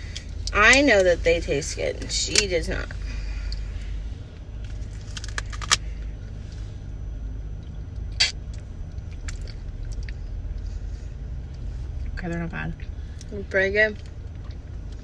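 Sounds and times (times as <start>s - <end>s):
steady low rumble: 0.0s - 15.0s
plastic cup crackle: 4.7s - 5.8s.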